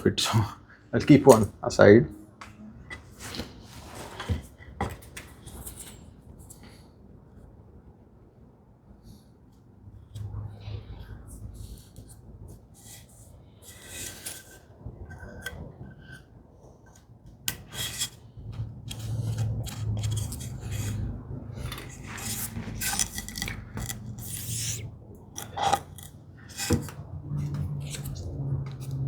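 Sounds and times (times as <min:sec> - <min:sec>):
wooden stick scraping glue: 0:12.8 - 0:16.3, 0:16.9 - 0:29.0.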